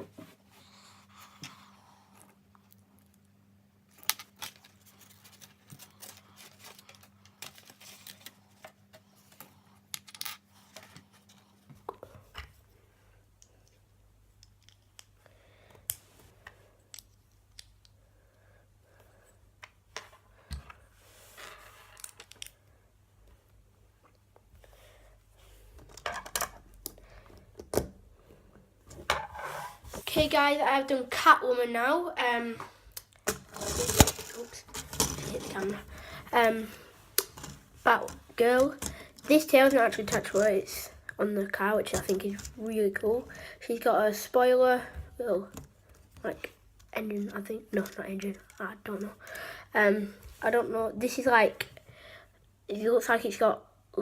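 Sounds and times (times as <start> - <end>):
plastic bricks clicking and rustling: 21.9 - 22.6, 33.2 - 36.0, 37.2 - 40.6.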